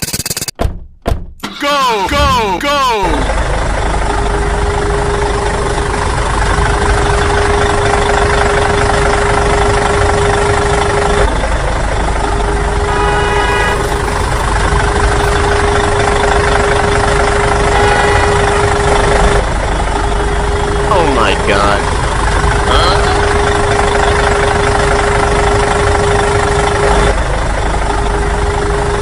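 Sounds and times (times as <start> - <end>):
constant whine: 1.4 - 29.0
mini tractor engine running: 13.6 - 17.4.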